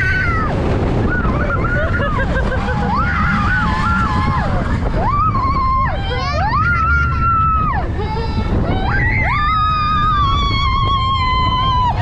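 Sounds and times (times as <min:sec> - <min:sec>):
riders screaming: 0:00.0 - 0:07.9
roller coaster train rumble: 0:00.0 - 0:12.0
wind: 0:00.0 - 0:12.0.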